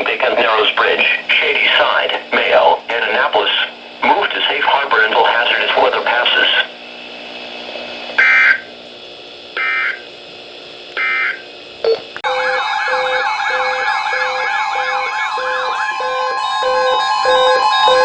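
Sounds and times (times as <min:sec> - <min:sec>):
siren-like warble: 0:08.2 - 0:08.7, 0:12.2 - 0:18.0
steady tone: 0:12.2 - 0:18.0.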